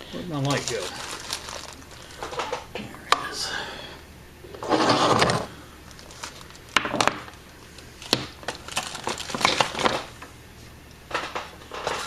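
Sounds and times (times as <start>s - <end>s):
objects knocking and rustling: 0.5s - 2.8s, 4.6s - 7.4s, 8.0s - 10.2s, 11.1s - 12.0s.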